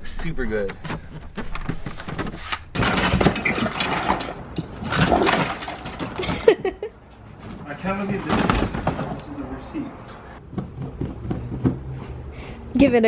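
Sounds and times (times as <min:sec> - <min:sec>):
loose objects clattering and clinking: 0:00.0 - 0:06.5.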